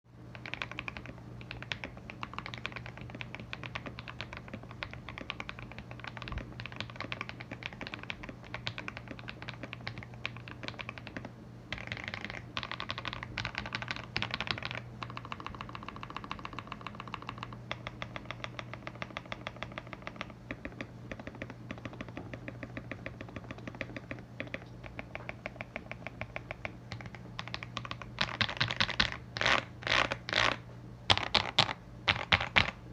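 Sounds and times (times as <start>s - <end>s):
low steady hum: 0.1s - 32.9s
mechanical keyboard typing: 0.3s - 32.8s.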